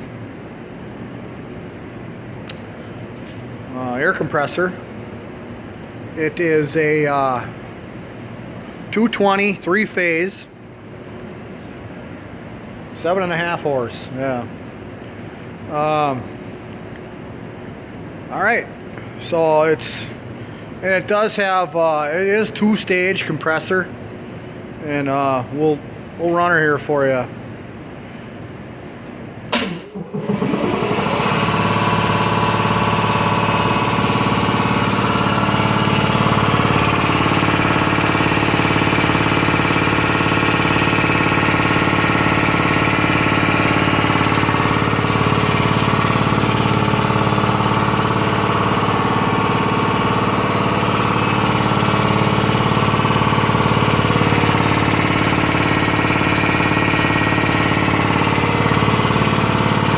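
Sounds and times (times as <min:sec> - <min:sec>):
sharp switch click: 0:29.5 - 0:29.9
air compressor running: 0:29.5 - 0:59.9.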